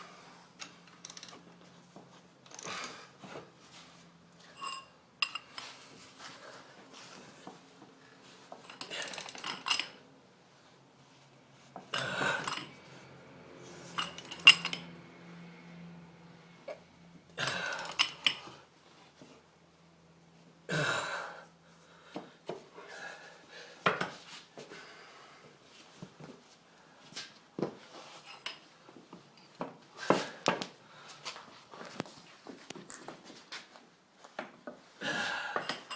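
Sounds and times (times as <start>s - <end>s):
steel tools clinking and clanking: 4.4s - 5.7s, 8.6s - 10.0s, 13.9s - 15.0s.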